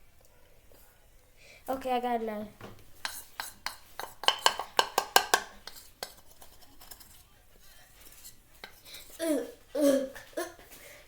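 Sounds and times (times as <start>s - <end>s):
spoon clinking against bowl: 3.0s - 7.1s.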